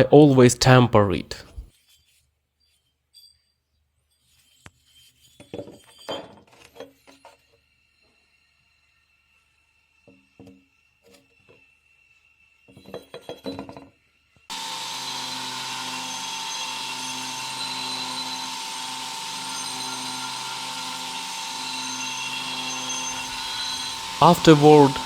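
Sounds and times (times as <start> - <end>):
power grinder grinding steel: 14.5 - 25.0.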